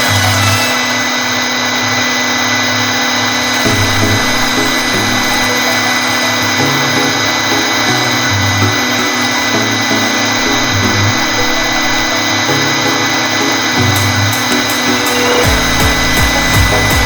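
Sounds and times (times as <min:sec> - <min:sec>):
router spindle whining: 0:00.0 - 0:17.0
background music: 0:03.5 - 0:17.0.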